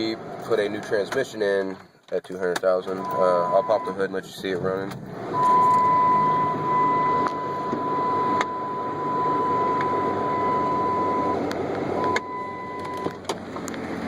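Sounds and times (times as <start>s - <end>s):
hood clicks and knocks: 1.0s - 3.2s.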